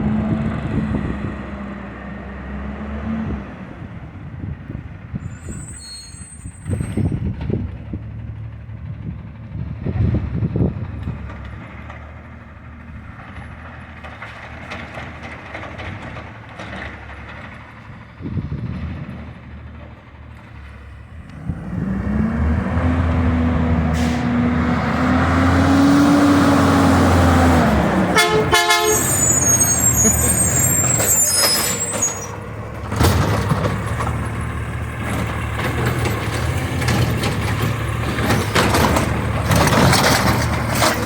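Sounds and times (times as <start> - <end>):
truck engine revving: 0.0 - 5.7, 20.5 - 41.0
horn blast: 28.1 - 30.3.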